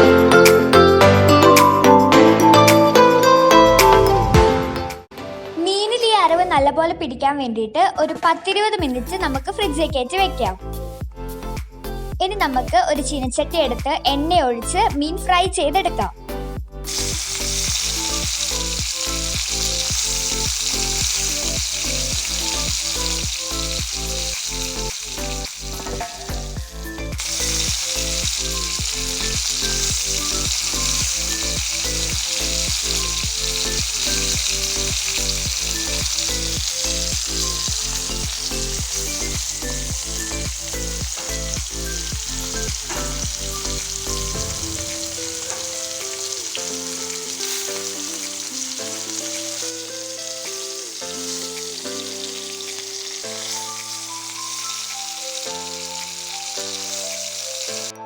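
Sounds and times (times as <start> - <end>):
fish sizzling in hot oil: 16.9 - 58.0.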